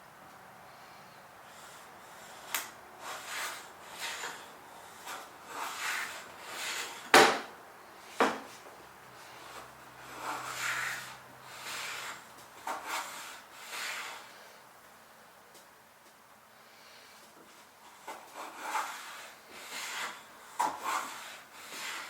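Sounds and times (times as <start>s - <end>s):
plane blade scraping strokes: 0.8s - 7.1s, 9.2s - 14.4s, 17.9s - 22.0s
sharp knock: 7.1s - 7.5s.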